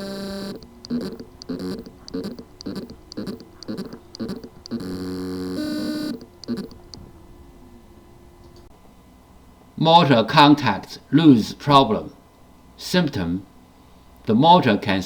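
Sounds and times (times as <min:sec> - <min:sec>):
high ticks: 0:00.0 - 0:07.0
hard drive motor buzzing pulses: 0:00.0 - 0:07.4
steady humming tones: 0:00.0 - 0:15.0.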